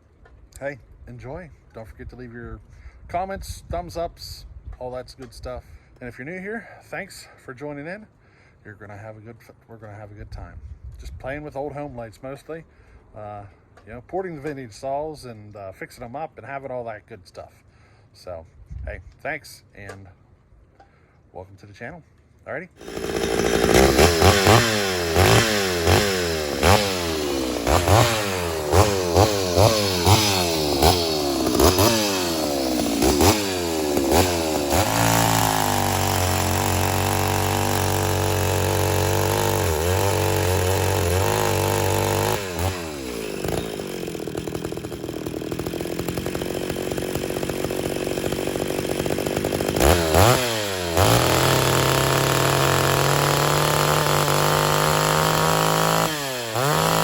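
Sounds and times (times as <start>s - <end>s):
chainsaw revving: 22.8s - 57.0s.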